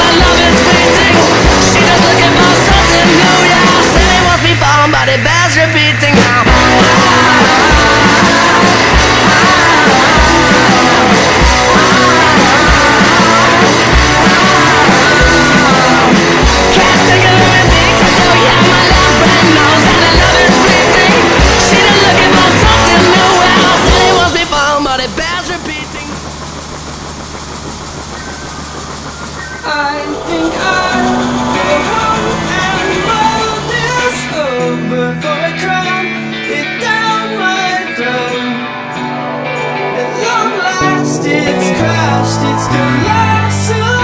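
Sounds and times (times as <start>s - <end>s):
person singing: 0.0s - 26.2s, 29.6s - 44.0s
steady low hum: 0.0s - 34.5s
rock music drum beat: 0.0s - 37.3s.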